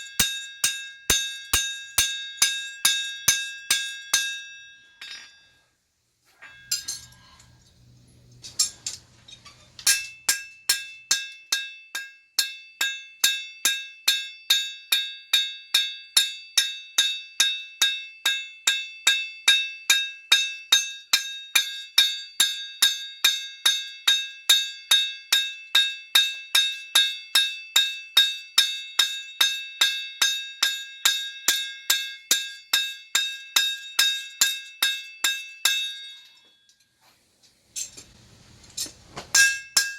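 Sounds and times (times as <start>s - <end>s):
hammer striking steel on anvil: 0.0s - 5.6s, 6.4s - 7.6s, 9.8s - 15.9s, 28.6s - 36.6s, 38.8s - 39.9s
faint low hum: 5.0s - 9.9s.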